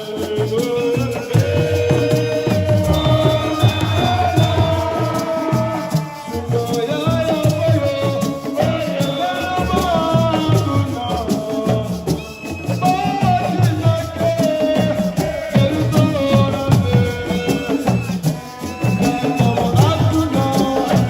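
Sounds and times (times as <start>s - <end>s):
percussion: 0.0s - 21.0s
shaker rattle: 0.0s - 21.0s.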